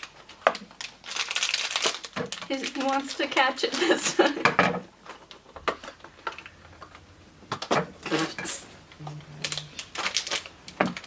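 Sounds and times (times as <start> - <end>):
small objects clicking and rustling: 0.0 - 4.3, 9.4 - 11.0
brief low hum: 8.9 - 9.9.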